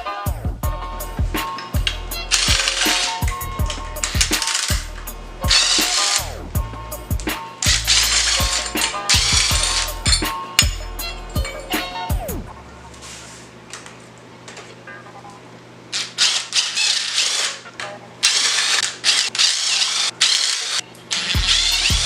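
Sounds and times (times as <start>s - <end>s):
power tool bursts: 2.3s - 3.4s, 5.5s - 6.4s, 7.6s - 9.9s, 16.0s - 17.6s, 18.2s - 22.0s.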